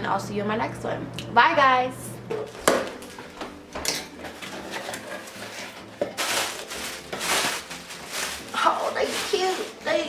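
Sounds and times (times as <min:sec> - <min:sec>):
packaging rustling and clicking: 0:04.2 - 0:09.8.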